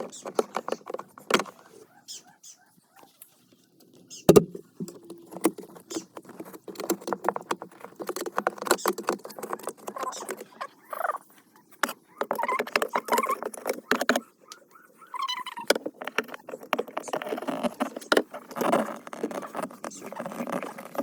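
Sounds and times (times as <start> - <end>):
clicks knocks and scraping: 0.0 - 2.0, 2.9 - 21.0
brief squeaks: 5.8 - 6.1, 12.0 - 21.0.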